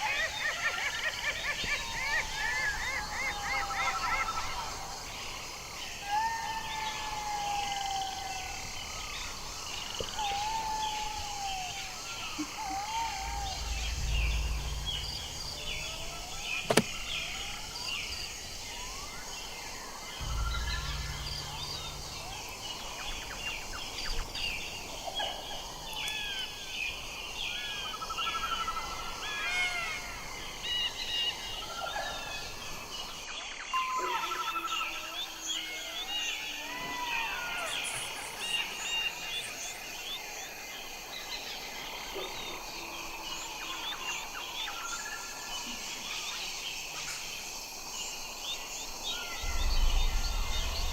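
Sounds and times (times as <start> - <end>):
chorus of high chirps and calls: 0.0 - 7.1, 7.7 - 27.0, 49.0 - 50.9
low rumbles: 12.4 - 18.2, 20.2 - 25.0, 49.4 - 50.9
sharp click: 16.6 - 16.9.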